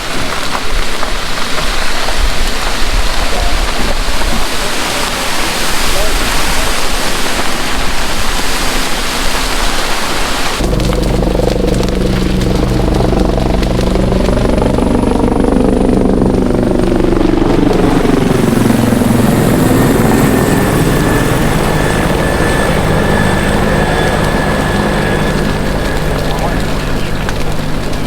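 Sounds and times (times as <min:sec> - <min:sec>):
helicopter flying past: 0:10.6 - 0:28.0.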